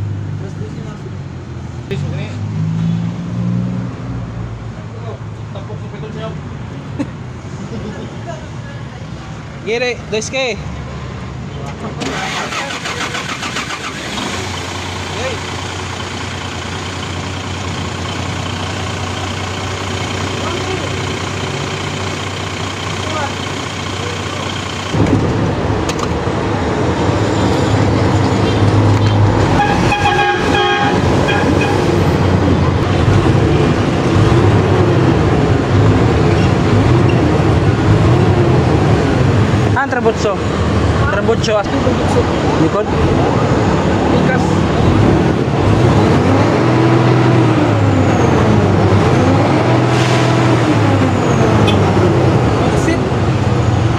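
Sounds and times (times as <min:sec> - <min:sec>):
diesel engine running loudly: 0:12.0 - 0:53.9.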